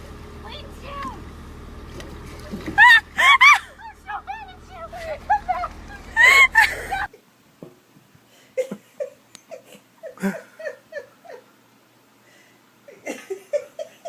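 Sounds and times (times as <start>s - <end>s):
person laughing: 2.5s - 7.1s, 8.6s - 11.5s
shrill cry: 2.8s - 7.1s.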